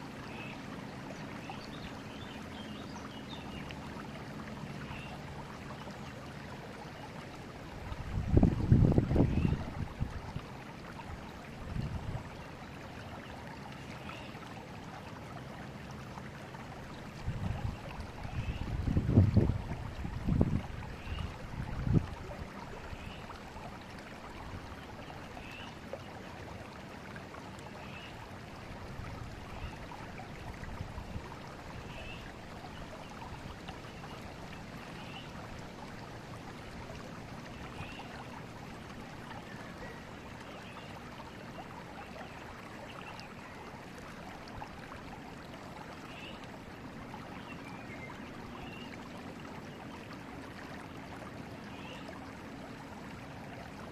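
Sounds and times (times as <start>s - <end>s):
river water rushing: 0.0s - 53.9s
wind rumbling on microphone: 7.8s - 10.4s, 11.2s - 12.3s, 17.2s - 22.6s.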